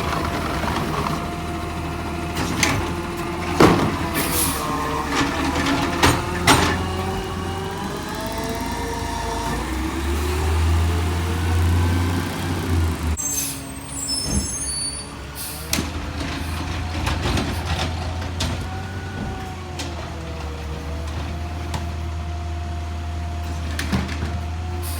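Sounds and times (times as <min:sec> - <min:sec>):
diesel engine droning: 0:00.0 - 0:24.9
knocks and clanks: 0:02.3 - 0:07.6, 0:15.7 - 0:22.0
brake squeal: 0:02.3 - 0:19.7, 0:24.5 - 0:24.9.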